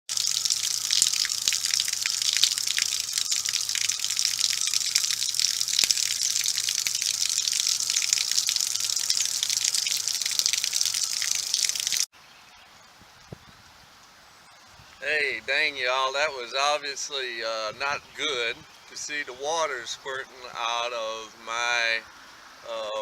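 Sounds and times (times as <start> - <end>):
water spraying with loud hiss: 0.1 - 12.1.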